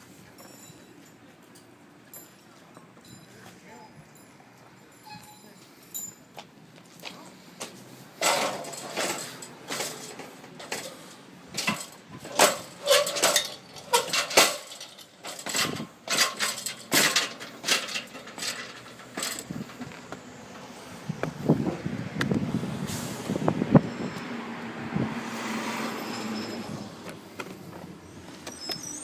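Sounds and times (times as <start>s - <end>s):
wood shingles clattering: 8.2s - 20.1s.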